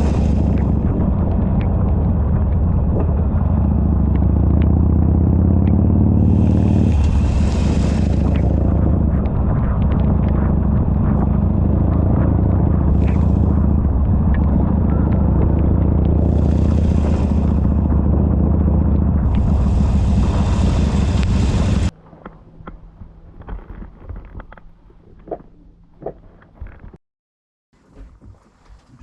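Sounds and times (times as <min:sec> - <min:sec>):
motorcycle engine running: 0:00.0 - 0:21.9
hiss: 0:06.4 - 0:08.3, 0:19.4 - 0:21.9.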